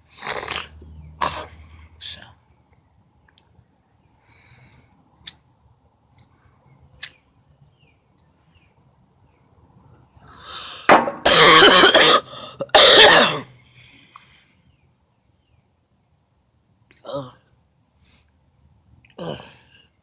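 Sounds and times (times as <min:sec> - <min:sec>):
woman coughing harshly: 0:11.2 - 0:13.4.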